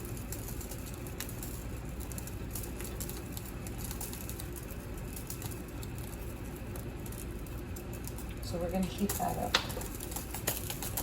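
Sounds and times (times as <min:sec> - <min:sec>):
butter sizzling in frying pan: 0:00.0 - 0:11.0
constant low hum: 0:00.0 - 0:11.0.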